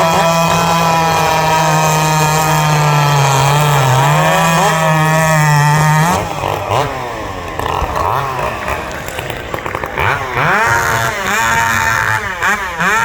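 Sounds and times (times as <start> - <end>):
racing chainsaw at full speed: 0.0 - 13.0
saw engines revving: 0.0 - 13.0.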